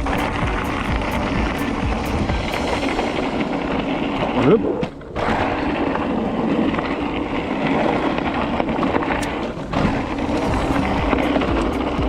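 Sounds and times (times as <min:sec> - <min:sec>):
tyre rolling noise: 0:00.0 - 0:12.0
wind: 0:00.0 - 0:12.0
bike clicks and rattles: 0:04.2 - 0:12.0.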